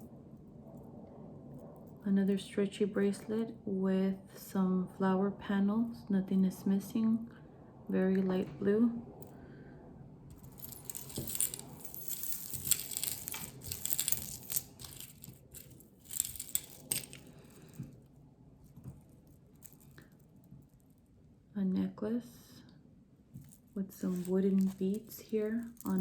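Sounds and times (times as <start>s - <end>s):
jewelry jingling and clinking: 10.3s - 18.0s, 18.8s - 20.3s, 23.4s - 26.0s.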